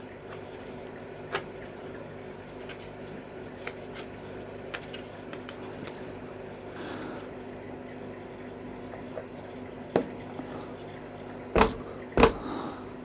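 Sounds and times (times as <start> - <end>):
clicks and taps of plastic parts: 11.6 - 12.4.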